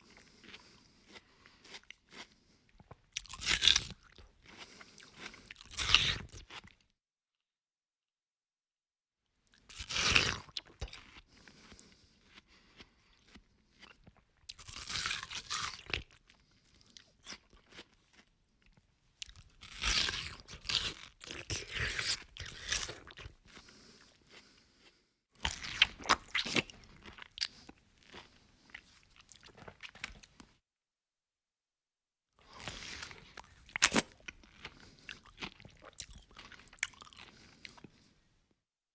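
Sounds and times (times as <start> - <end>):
person crunching food: 0.0 - 6.9, 9.6 - 30.5, 32.4 - 38.1.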